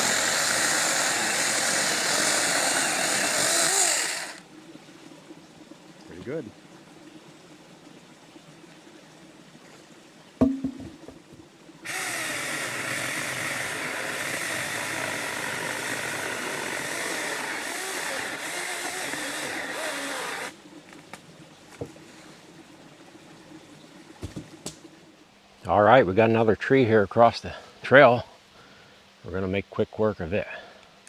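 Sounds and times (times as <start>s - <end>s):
chainsaw cutting wood: 0.0s - 4.4s, 11.9s - 20.6s
knock: 10.4s - 11.2s.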